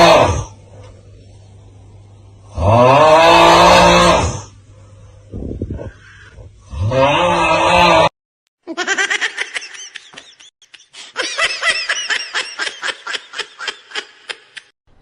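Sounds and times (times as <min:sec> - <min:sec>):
high-pitched pulsed laughter: 0:08.6 - 0:14.7.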